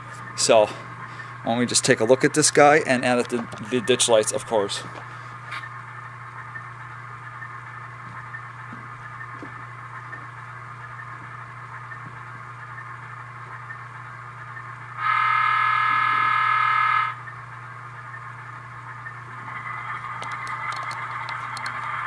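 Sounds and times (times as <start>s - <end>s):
model locomotive engine idling: 0.0s - 22.0s
steady hum: 0.0s - 22.0s
locomotive horn blast: 15.0s - 17.2s.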